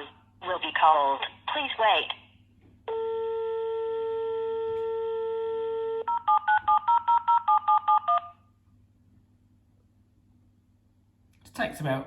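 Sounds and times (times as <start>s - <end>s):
dial tone: 2.9s - 8.4s.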